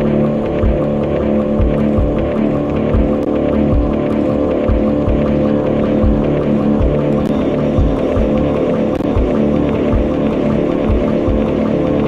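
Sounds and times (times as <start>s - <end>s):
deep kick drum: 0.0s - 12.0s
light ticking percussion: 0.0s - 12.0s
sustained synth tones: 0.0s - 12.0s.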